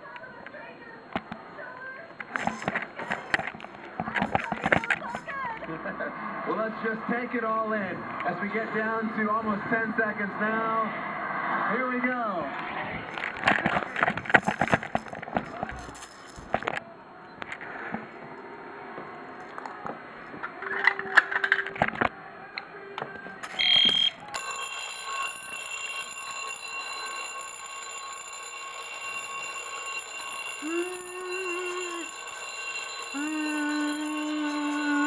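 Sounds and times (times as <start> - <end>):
fire alarm bells ringing: 1.8 - 5.7, 13.2 - 16.8, 23.4 - 35.0
alarm horn sounding: 23.5 - 26.1
kazoo blown: 30.6 - 32.0.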